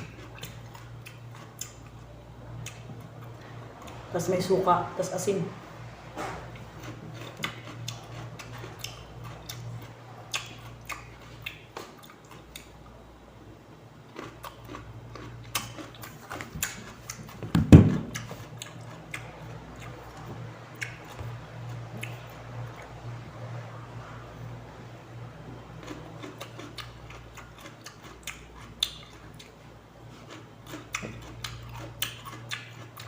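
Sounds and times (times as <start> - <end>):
crunching and chewing cucumber: 0.0 - 4.1, 6.2 - 13.1, 13.8 - 23.0, 25.6 - 33.0
thump: 17.5 - 18.1.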